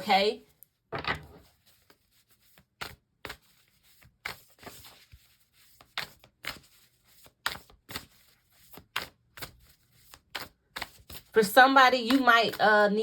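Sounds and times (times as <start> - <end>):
cards being shuffled: 1.4 - 11.4.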